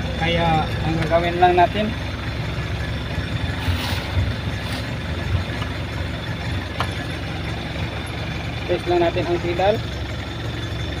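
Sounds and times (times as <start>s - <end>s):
diesel engine idling: 0.0s - 11.0s.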